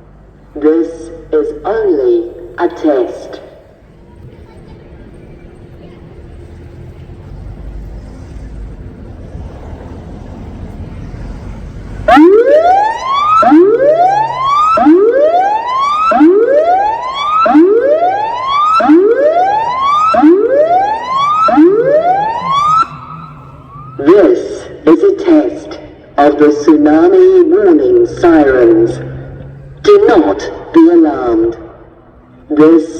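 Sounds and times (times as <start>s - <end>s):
low rumbling background noise: 0.0s - 14.8s
warning siren whooping: 11.8s - 32.9s.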